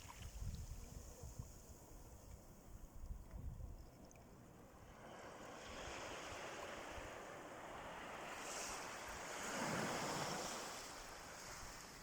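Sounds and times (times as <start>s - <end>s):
sea waves washing on beach: 4.5s - 12.0s.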